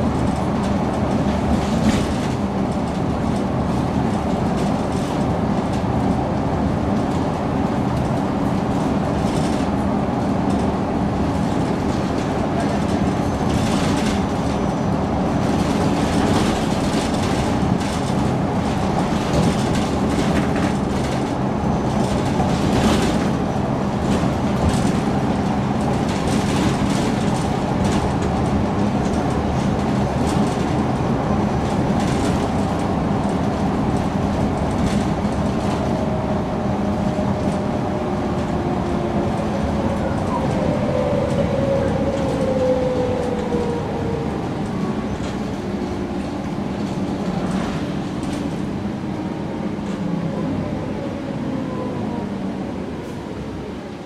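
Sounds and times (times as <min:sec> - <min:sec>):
bus engine drone: 0:00.0 - 0:54.0.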